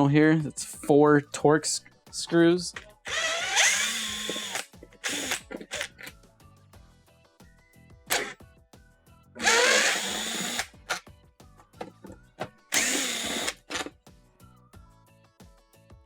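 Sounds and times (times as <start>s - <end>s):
power driver motor whine: 3.1s - 5.9s, 9.4s - 10.7s, 12.8s - 13.8s.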